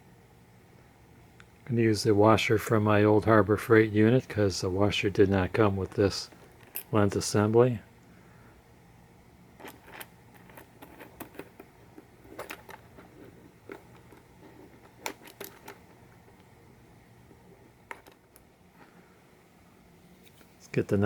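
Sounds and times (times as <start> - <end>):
small parts clicking and tapping: 6.3 - 7.0, 9.6 - 16.6, 17.6 - 18.5.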